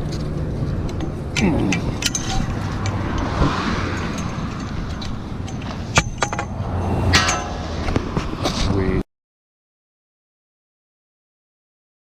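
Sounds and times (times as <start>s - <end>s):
road traffic rumble: 0.0s - 9.1s.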